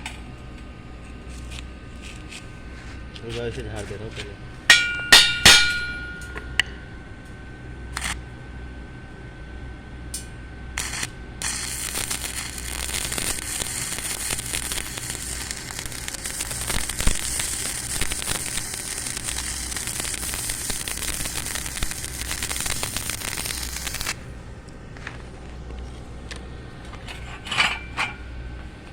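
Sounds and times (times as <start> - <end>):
metallic ring: 4.7 - 6.9, 27.1 - 28.4
arc welding crackling hiss: 10.7 - 24.3.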